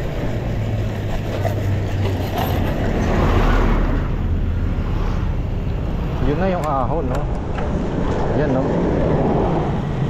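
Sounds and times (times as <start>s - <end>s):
wind on the microphone: 5.1s - 10.0s.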